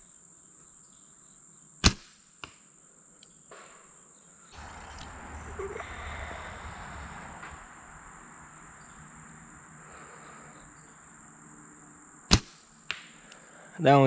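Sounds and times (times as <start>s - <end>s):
crickets trilling: 0.0s - 14.0s
bow shot crack: 1.8s - 2.6s, 4.6s - 9.0s, 12.3s - 13.4s.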